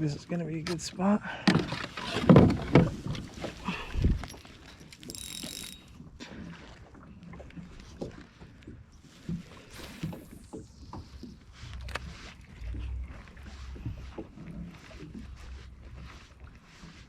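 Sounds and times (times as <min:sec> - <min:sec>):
fishing gear knocking: 0:01.5 - 0:06.1.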